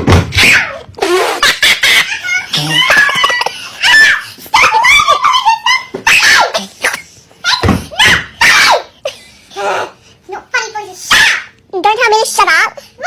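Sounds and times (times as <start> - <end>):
young voices laughing and screaming: 0.4 - 6.8.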